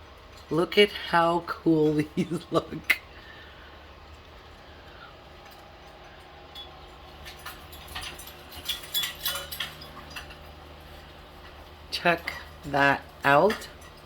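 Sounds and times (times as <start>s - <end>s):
low room hum: 0.0s - 14.0s
small hard objects clinking: 5.4s - 14.0s.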